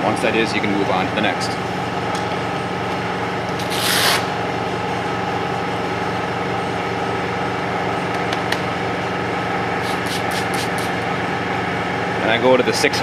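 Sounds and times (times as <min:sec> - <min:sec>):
palm sander running: 0:09.8 - 0:11.0.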